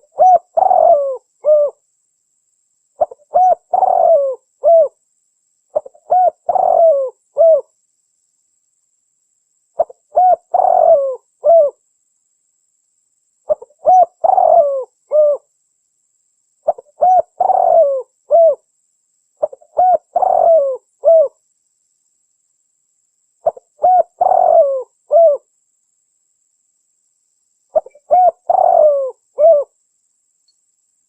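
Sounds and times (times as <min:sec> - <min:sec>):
dove cooing: 0:00.0 - 0:01.8, 0:03.0 - 0:05.0, 0:05.7 - 0:07.7, 0:09.8 - 0:11.8, 0:13.5 - 0:15.5, 0:16.6 - 0:18.6, 0:19.4 - 0:21.4, 0:23.4 - 0:25.5, 0:27.7 - 0:29.8.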